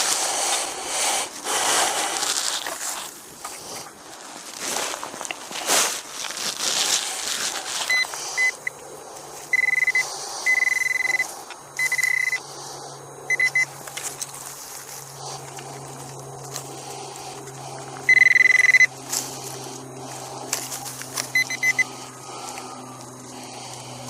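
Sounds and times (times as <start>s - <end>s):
crunching noise: 0.0s - 24.0s
low steady hum: 0.0s - 24.0s
metal detector beeps: 7.9s - 8.8s, 9.5s - 12.4s, 13.3s - 13.7s, 18.1s - 18.9s, 21.2s - 22.0s.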